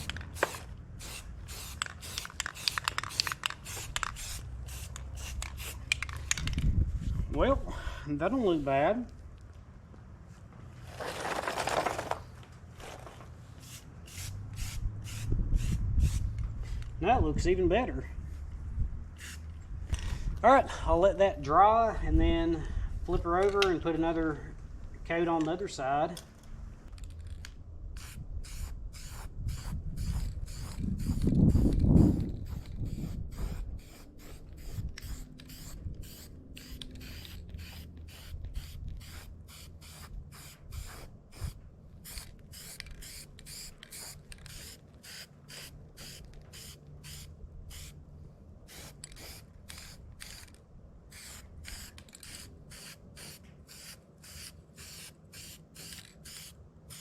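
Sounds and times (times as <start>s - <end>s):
spray paint can bursts: 0.0s - 6.5s, 13.6s - 17.0s, 19.2s - 19.5s, 28.0s - 48.0s, 48.7s - 57.0s.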